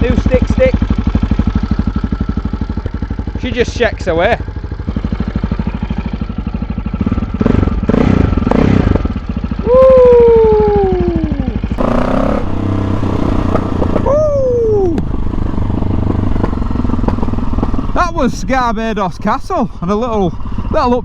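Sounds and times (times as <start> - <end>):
motorcycle engine idling: 0.0 - 21.0.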